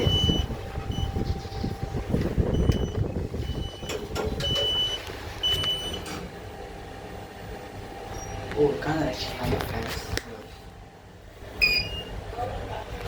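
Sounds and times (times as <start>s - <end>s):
buzzer high beeps: 0.0s - 1.2s, 2.5s - 6.0s, 11.6s - 12.2s
low rumble of movement: 0.0s - 13.0s.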